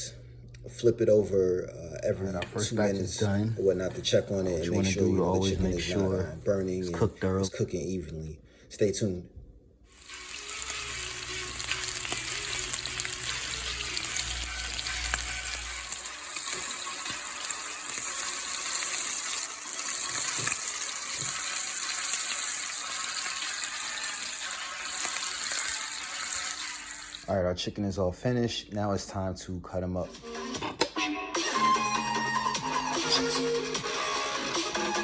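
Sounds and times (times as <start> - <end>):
chicken sizzling in a pan: 9.9 - 27.3.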